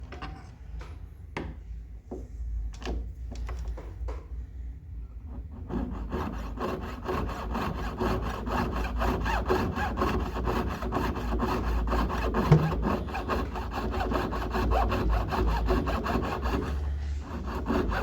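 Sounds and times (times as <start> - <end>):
hand tool rasping metal: 5.8 - 18.0
loud knock: 12.4 - 13.2.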